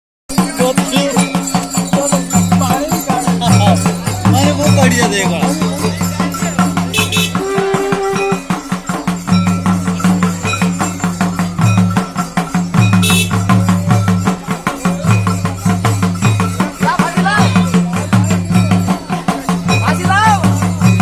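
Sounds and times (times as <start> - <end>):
folk dance music: 0.3 - 21.0
jingling percussion: 0.3 - 21.0.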